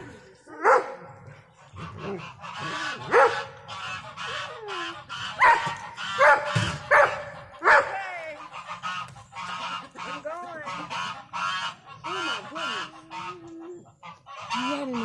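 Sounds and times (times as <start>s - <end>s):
geese honking: 0.0s - 15.0s
dog barking: 0.6s - 1.1s, 3.1s - 3.6s, 5.4s - 8.0s.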